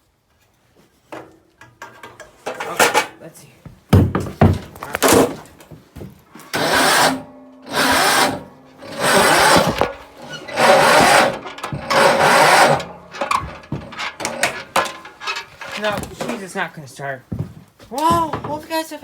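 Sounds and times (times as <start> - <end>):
small engine cranking: 6.4 - 16.0.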